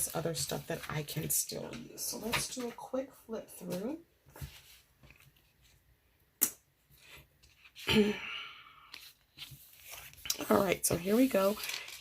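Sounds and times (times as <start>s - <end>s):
handling planner pages: 8.9s - 12.0s.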